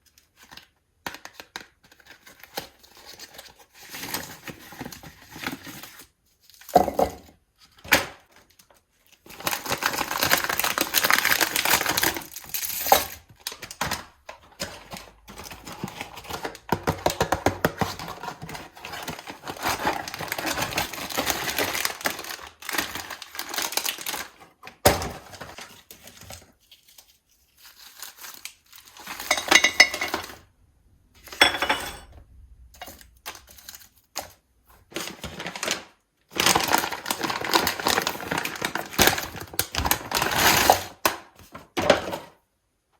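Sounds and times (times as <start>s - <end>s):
plastic packets tearing and crinkling: 8.2s - 29.4s, 32.8s - 41.8s.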